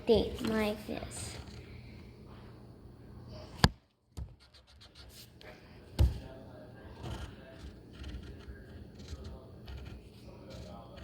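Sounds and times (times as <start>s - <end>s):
pencil scratching on paper: 4.4s - 5.3s, 6.8s - 11.0s.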